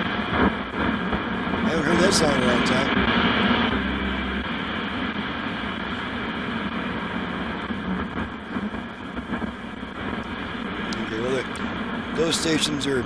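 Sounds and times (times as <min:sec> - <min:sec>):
radio static and hum: 0:01.7 - 0:05.0.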